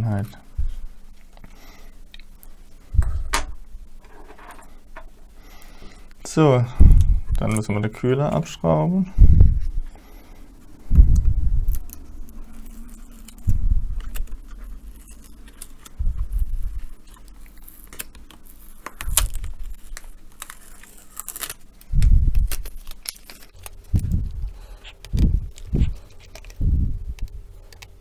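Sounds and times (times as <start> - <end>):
dull low thumps: 0.6 - 1.0, 2.9 - 3.7, 6.7 - 7.4, 9.1 - 9.9, 10.8 - 11.8, 13.4 - 14.2, 16.0 - 16.9, 21.9 - 22.6, 23.9 - 26.0, 26.6 - 27.5.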